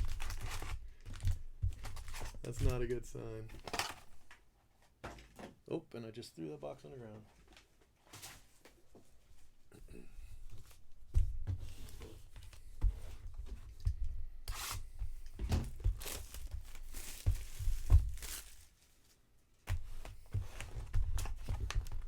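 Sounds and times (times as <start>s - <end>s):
wrappers tearing and crinkling: 0.0s - 2.8s, 16.0s - 19.2s
dull knocks and bumps: 11.0s - 14.2s.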